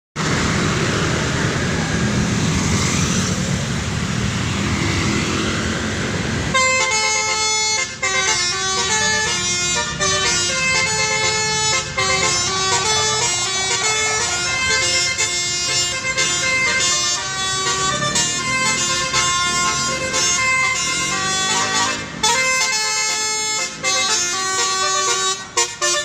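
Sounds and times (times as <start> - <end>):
vehicle engine and road noise: 0.2 - 26.0
musical horn playing a tune: 6.5 - 26.0.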